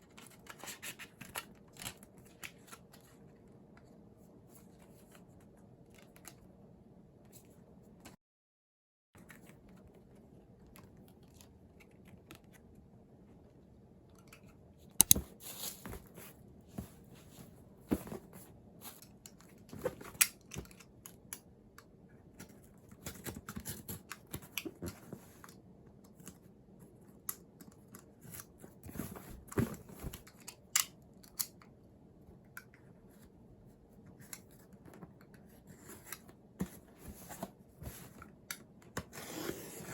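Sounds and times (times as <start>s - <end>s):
sharp plastic clicks: 15.0s - 15.2s.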